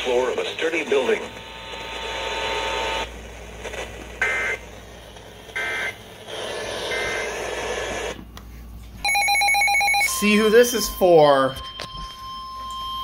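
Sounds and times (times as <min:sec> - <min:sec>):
radio hiss: 0:00.0 - 0:06.1.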